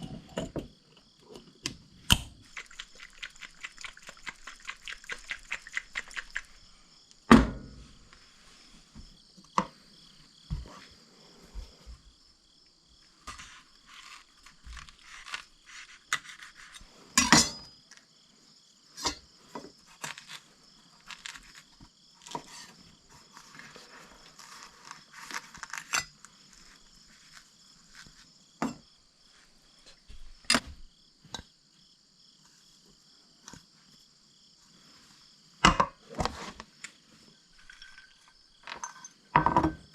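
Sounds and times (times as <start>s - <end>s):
insects chirping: 0.0s - 39.9s
utensils and dishes clinking: 37.6s - 39.6s.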